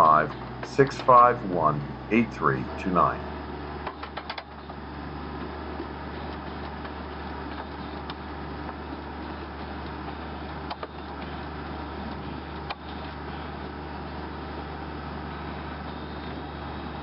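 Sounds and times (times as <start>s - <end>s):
background rumble with low hum: 0.0s - 17.0s.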